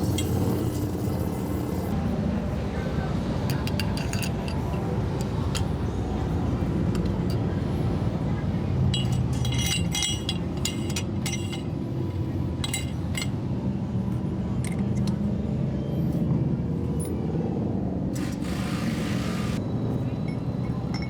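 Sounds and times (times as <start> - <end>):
metal tools clinking: 3.5 - 5.9, 8.9 - 11.7, 12.6 - 13.4, 20.1 - 21.0.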